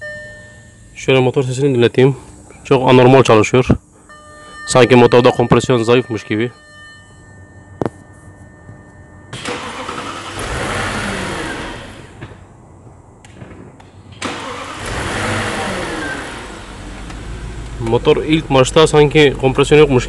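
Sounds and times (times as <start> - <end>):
engine starter cranking: 9.3 - 12.3, 14.1 - 18.0.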